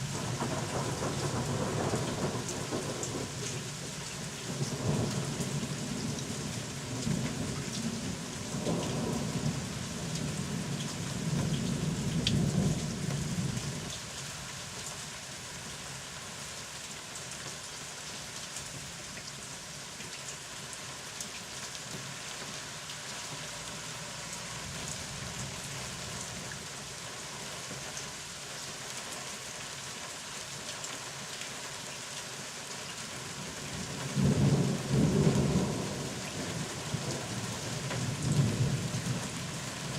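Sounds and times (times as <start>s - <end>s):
steady rain: 0.0s - 39.9s
thunder rumbling: 0.1s - 3.3s.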